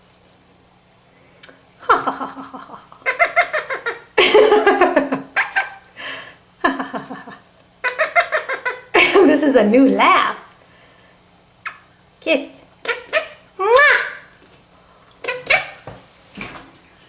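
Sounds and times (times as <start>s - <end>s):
parrot mimicking laughter: 1.8s - 5.9s, 6.8s - 9.3s, 12.8s - 14.3s, 15.2s - 15.8s.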